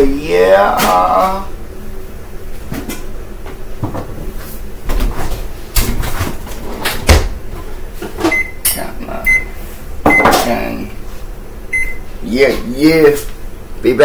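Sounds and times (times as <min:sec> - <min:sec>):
kitchen knocks and clunks: 0:02.7 - 0:07.4, 0:10.0 - 0:10.6
short electronic beeps: 0:09.3 - 0:09.5, 0:11.8 - 0:12.0.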